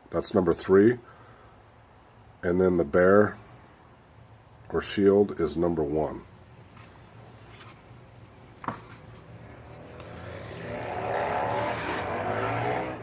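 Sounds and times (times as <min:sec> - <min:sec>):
engine-like drone: 0:09.2 - 0:13.0.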